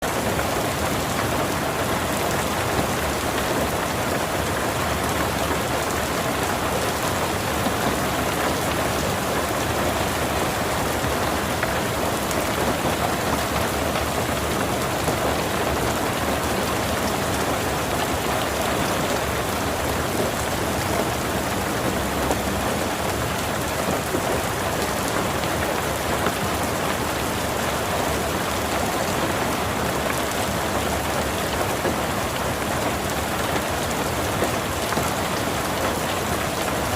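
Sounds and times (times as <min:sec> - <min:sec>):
heavy rain pattering: 0:00.0 - 0:36.9.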